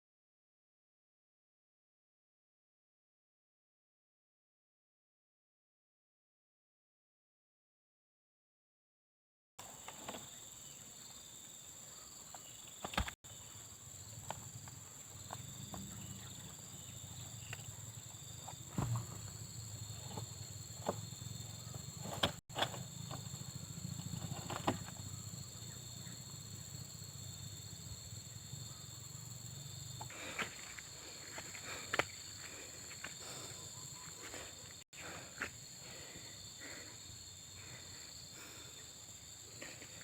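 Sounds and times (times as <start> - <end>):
insects droning: 9.6 - 40.0.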